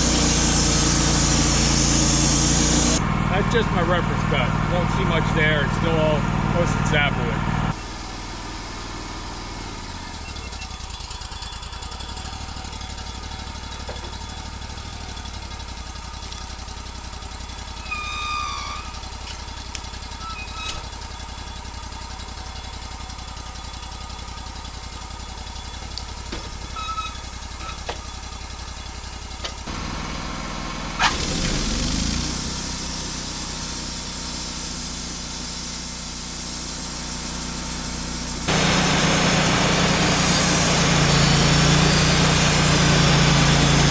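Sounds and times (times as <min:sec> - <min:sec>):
saw blade cutting log: 0:00.0 - 0:03.0, 0:17.7 - 0:20.9, 0:30.9 - 0:43.9
band sawmill running: 0:00.0 - 0:43.9.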